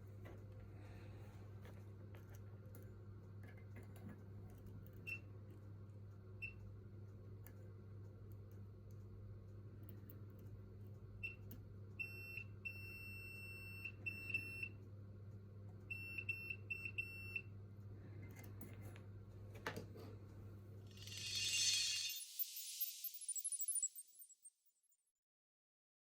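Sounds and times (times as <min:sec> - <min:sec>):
multimeter beeping: 0:21.0 - 0:24.5.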